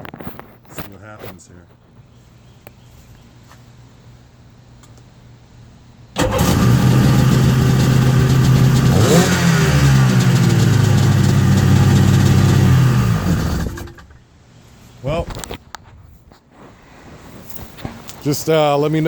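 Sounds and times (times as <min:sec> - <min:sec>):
jet ski engine starting and running: 0:06.2 - 0:14.2.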